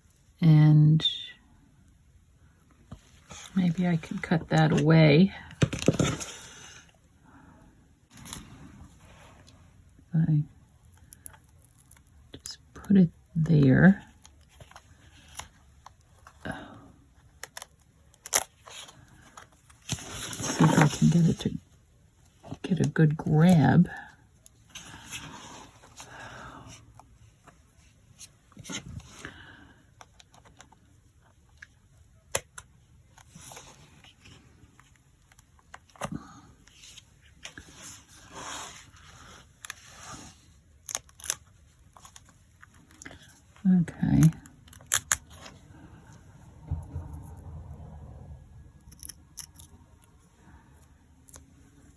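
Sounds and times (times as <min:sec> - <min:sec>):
paper scraping and rustling: 0:05.6 - 0:06.9, 0:18.6 - 0:21.6, 0:36.7 - 0:40.6.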